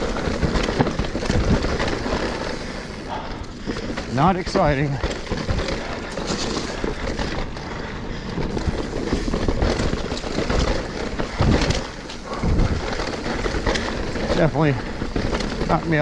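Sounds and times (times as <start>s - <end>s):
bike knocking and rattling: 0.0s - 16.0s
bike tyres on dirt and roots: 0.0s - 16.0s
wind buffeting microphone: 11.1s - 15.8s.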